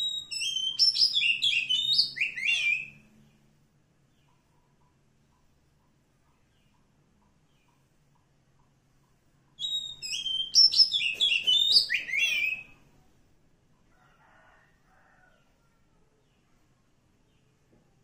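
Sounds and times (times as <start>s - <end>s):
bird singing whistled notes: 0.0s - 3.0s, 9.6s - 12.8s.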